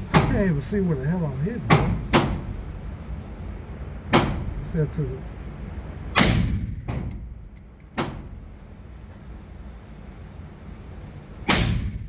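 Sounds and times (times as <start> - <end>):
light metallic clinks: 7.1 - 8.4.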